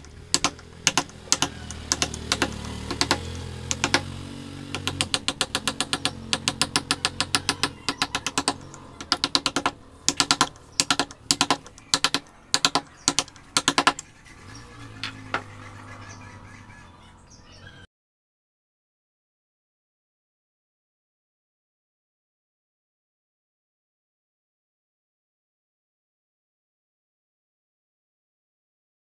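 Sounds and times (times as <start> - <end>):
mallet tapping chisel into wood: 0.0 - 4.1, 4.8 - 14.0.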